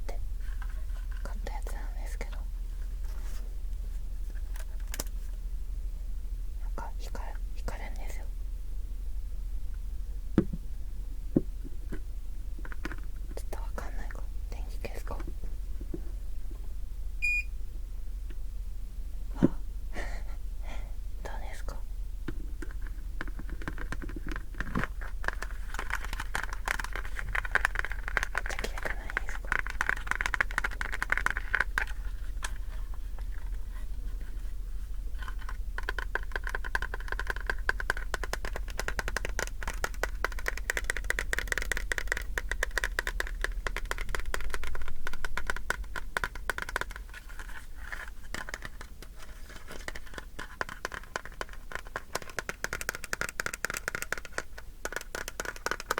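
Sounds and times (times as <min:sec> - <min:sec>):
small scratches and clicks: 0:22.6 - 0:34.5, 0:35.1 - 0:55.9.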